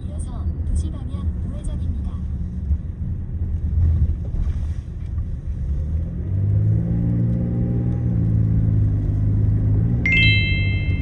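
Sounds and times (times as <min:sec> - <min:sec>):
road rumble inside car: 0:00.0 - 0:11.0
car engine note: 0:10.1 - 0:11.0.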